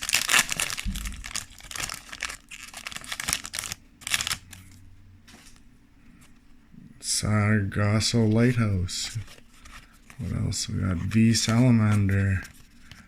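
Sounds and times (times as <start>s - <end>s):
foil wrapper crinkling: 0.0s - 4.8s, 9.1s - 13.0s.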